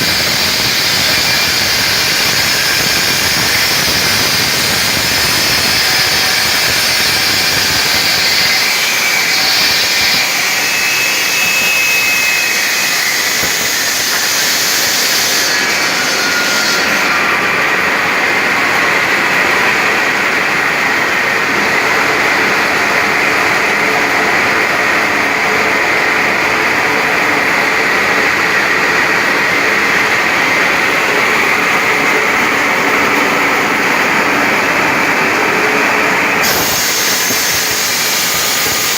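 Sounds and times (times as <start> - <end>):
stone-cutting machine running: 0.0 - 38.9.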